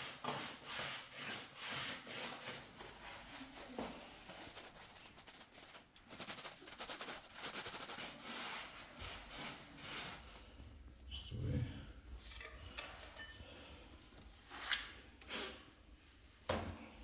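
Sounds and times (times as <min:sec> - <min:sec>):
plaster rubbing and scraping: 0:00.0 - 0:10.3.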